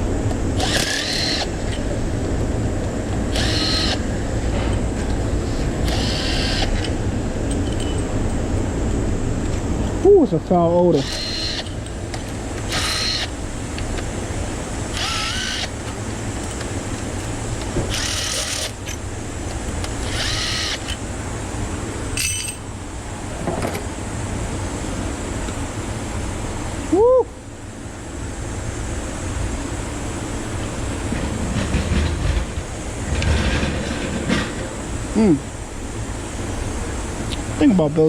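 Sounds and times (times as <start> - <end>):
metallic clink: 22.2 - 22.7
scraping clatters: 31.1 - 34.8.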